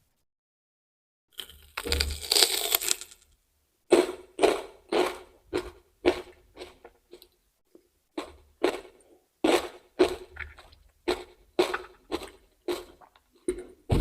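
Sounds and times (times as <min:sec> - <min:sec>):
biting crisp raw vegetables: 0:01.4 - 0:03.3
chewing crunches: 0:01.4 - 0:03.3, 0:08.2 - 0:13.7.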